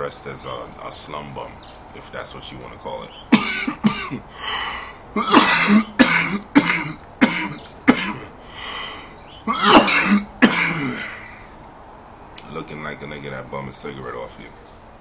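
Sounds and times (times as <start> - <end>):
man coughing hard: 3.3 - 4.3, 5.2 - 8.3, 9.5 - 11.3.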